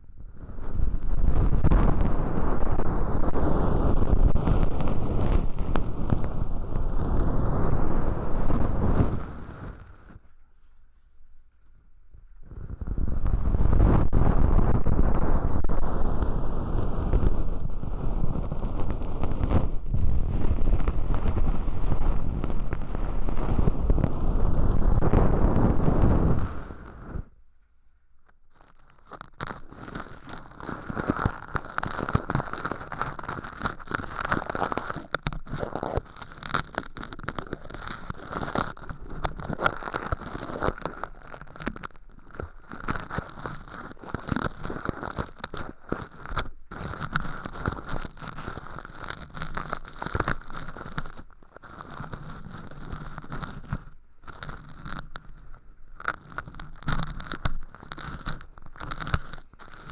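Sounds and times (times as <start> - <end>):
tools scraping crackly flakes: 1.6 - 10.8, 28.2 - 59.9.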